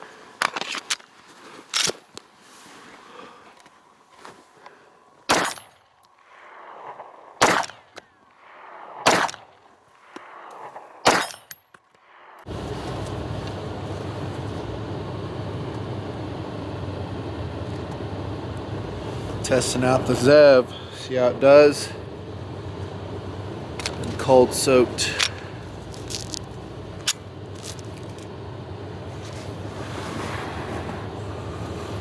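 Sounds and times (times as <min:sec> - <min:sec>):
pistol shots: 0:05.3 - 0:05.7, 0:07.4 - 0:07.8, 0:09.0 - 0:09.4, 0:11.0 - 0:11.3
steady low noise: 0:12.5 - 0:32.0.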